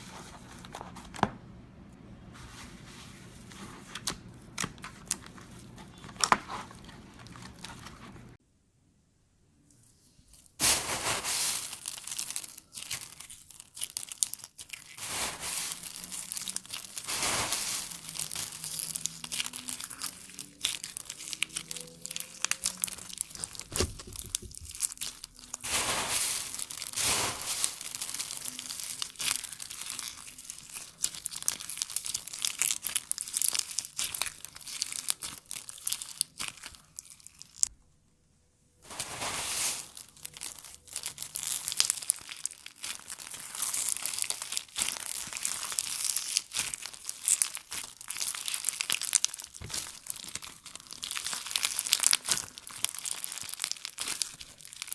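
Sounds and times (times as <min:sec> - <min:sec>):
crunchy slime squeezed by hand: 0:10.6 - 0:37.7, 0:39.2 - 0:54.9.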